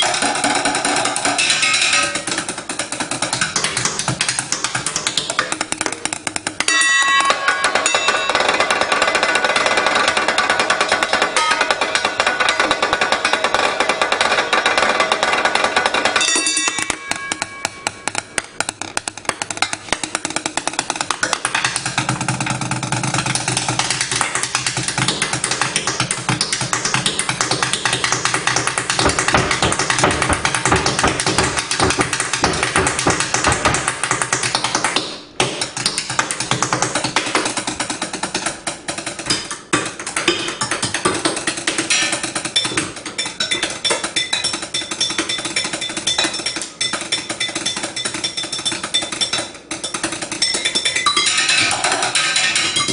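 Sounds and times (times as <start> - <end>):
chopsticks drumming on pans: 0.0 - 52.9
struck metal ringing: 6.6 - 18.6.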